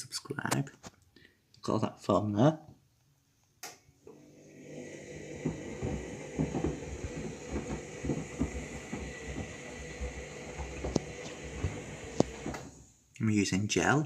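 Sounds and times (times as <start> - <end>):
washing machine motor hum: 4.1 - 13.0
shoes thumping in washing machine drum: 4.8 - 12.8.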